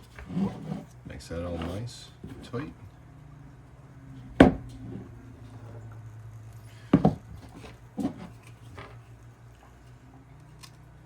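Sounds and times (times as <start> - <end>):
steady low hum: 0.0 - 11.0
hard plastic parts knocking: 4.4 - 4.8, 6.9 - 8.9.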